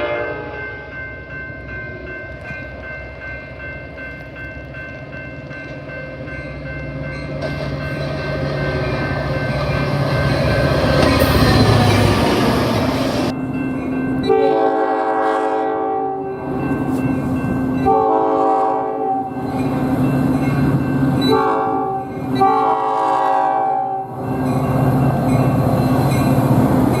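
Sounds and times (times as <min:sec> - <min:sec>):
train air horn: 0:00.0 - 0:00.8, 0:14.3 - 0:16.3, 0:17.8 - 0:19.3, 0:21.2 - 0:24.1
train engine rumble: 0:00.0 - 0:27.0.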